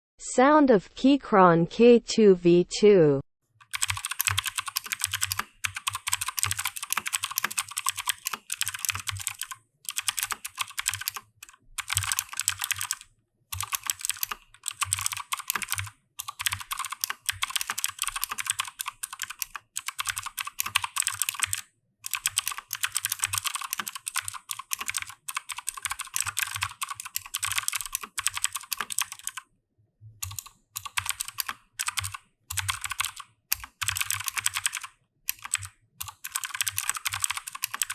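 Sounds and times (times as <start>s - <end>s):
clicky mechanical keyboard typing: 3.6s - 29.4s, 30.2s - 37.9s.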